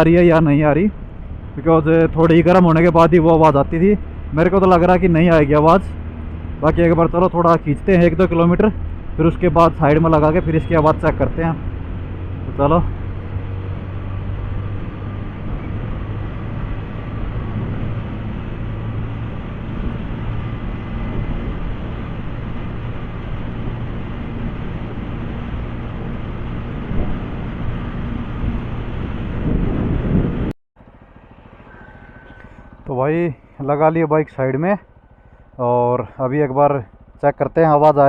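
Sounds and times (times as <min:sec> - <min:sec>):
motorcycle engine running: 0:08.4 - 0:38.0
wind over microphone: 0:13.4 - 0:30.6.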